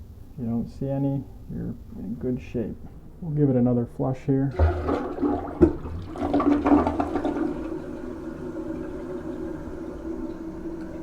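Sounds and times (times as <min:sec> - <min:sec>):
toilet flush lever clunk: 0:04.5 - 0:07.7
toilet flushing water rush: 0:04.5 - 0:11.0.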